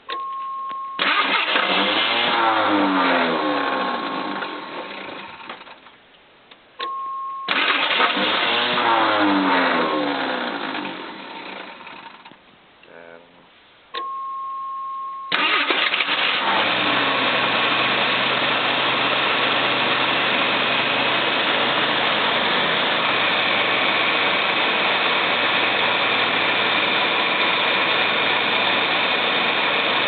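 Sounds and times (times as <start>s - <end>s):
car engine cranking and idling: 0.0s - 12.5s, 15.3s - 30.0s
steady beep: 0.1s - 1.0s, 6.8s - 7.5s, 14.0s - 15.3s.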